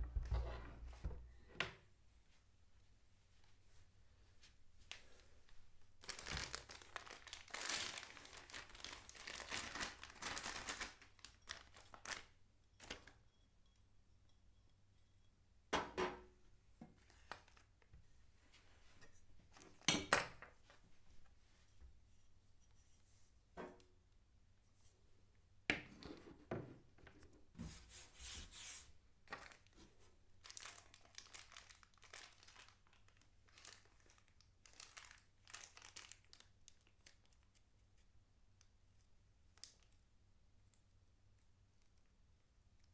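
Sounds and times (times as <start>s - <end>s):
plastic and paper crinkling: 6.0s - 13.2s, 29.3s - 37.4s.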